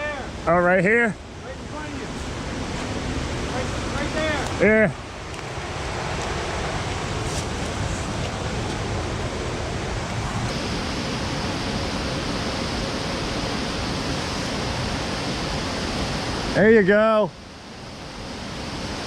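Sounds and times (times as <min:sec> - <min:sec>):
fast-flowing river water: 0:01.3 - 0:16.6.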